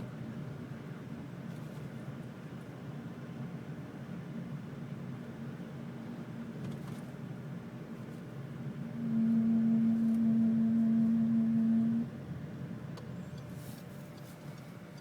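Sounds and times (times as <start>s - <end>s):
car engine humming: 3.2s - 15.0s.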